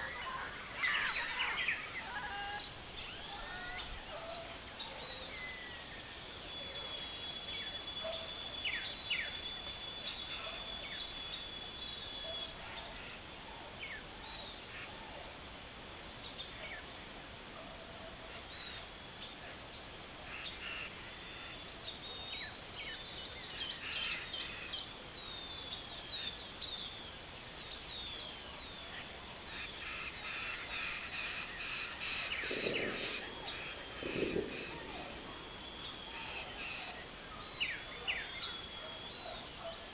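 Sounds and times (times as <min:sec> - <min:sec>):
small birds chirping: 0:21.6 - 0:39.9.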